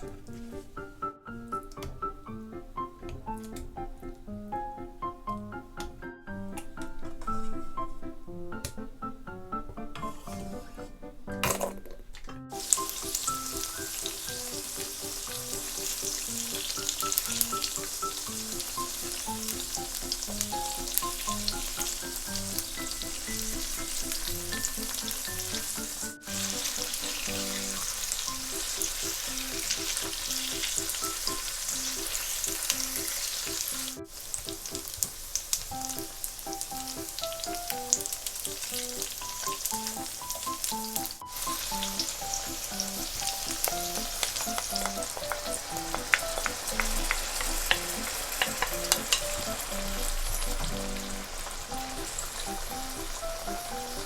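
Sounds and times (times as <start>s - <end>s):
bouncy background music: 0.0s - 54.0s
tofu sizzling in frying pan: 12.5s - 54.0s.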